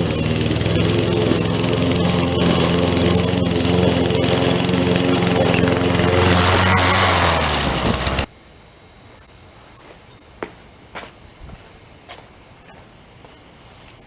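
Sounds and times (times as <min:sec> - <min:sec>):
lawn mower engine running: 0:00.0 - 0:08.3
faint high buzz: 0:08.2 - 0:12.7.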